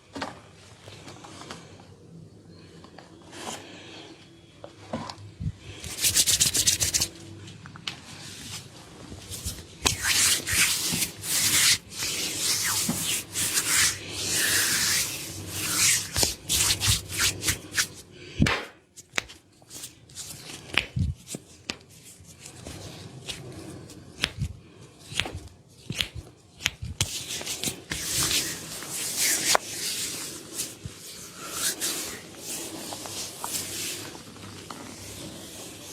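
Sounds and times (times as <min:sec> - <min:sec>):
hands rubbing skin: 0:05.7 - 0:07.2, 0:08.2 - 0:18.0, 0:19.0 - 0:35.9.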